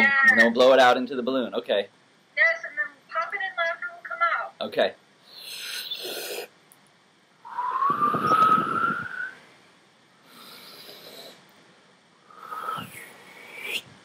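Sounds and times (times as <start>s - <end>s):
long blow out through lips: 7.5s - 9.4s, 12.3s - 14.0s.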